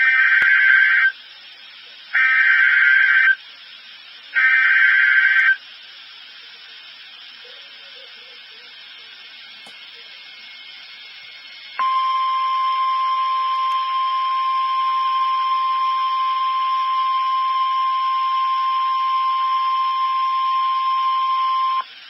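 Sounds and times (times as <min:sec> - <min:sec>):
faint radio hiss: 0:00.0 - 0:22.0
steady alarm tone: 0:11.5 - 0:21.9.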